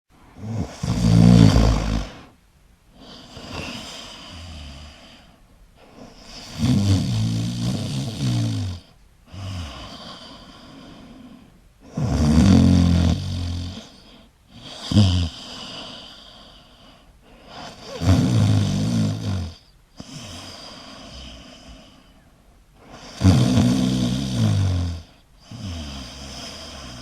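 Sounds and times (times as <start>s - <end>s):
person snoring: 0.4s - 2.3s, 3.0s - 5.3s, 6.0s - 13.8s, 14.6s - 16.1s, 17.6s - 21.5s, 22.8s - 27.0s
soft breathing: 9.2s - 11.7s.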